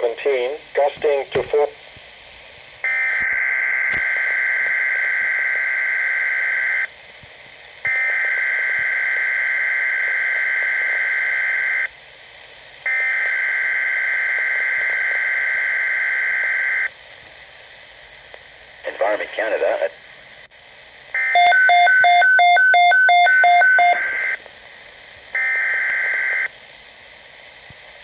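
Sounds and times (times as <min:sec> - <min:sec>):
harsh two-pitch data buzz: 0:21.2 - 0:24.4.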